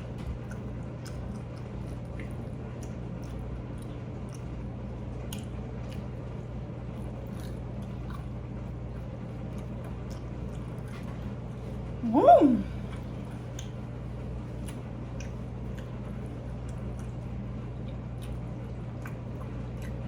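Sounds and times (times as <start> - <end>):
steady low hum: 0.0 - 20.0
person chewing: 0.4 - 4.5, 7.0 - 8.4, 17.9 - 20.0.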